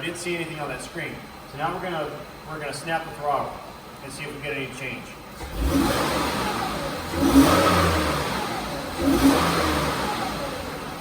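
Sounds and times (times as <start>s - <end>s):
car engine revving: 5.4s - 11.0s.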